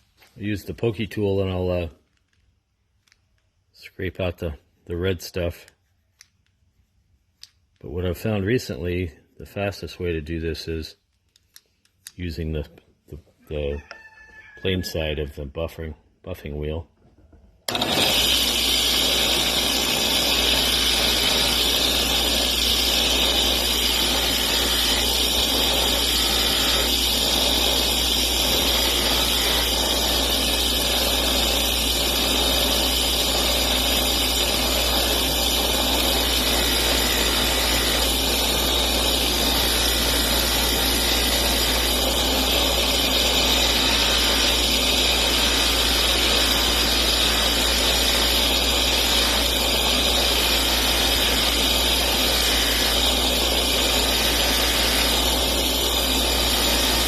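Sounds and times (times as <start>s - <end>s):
bench buffer motor hum: 17.7s - 57.0s
buffing wheel hiss: 17.7s - 57.0s.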